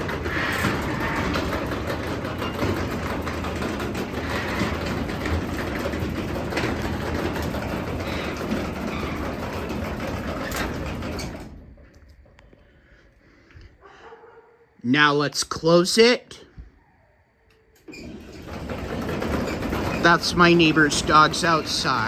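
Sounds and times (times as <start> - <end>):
garage door opener running: 0.0 - 12.4, 17.7 - 22.0
door rattling along tracks: 0.0 - 12.5, 17.8 - 22.0.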